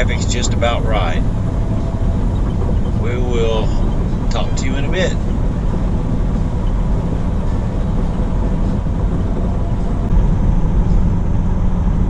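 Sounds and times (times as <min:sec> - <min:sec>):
truck engine and road noise: 0:00.0 - 0:12.0.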